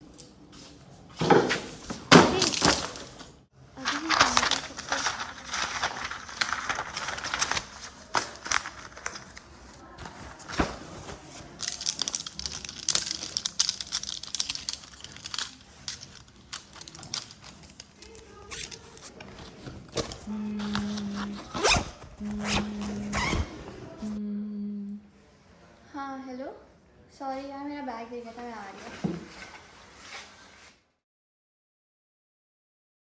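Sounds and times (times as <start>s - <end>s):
paper rustling and crinkling: 0.2s - 24.2s, 28.3s - 30.8s
pens and pencils clattering: 1.2s - 24.2s.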